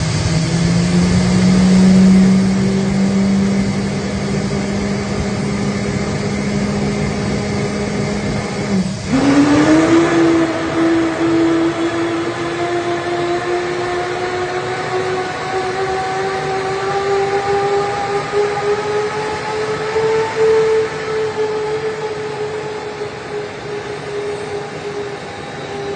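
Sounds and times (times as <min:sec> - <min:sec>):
jet engines whining: 0:00.0 - 0:25.9.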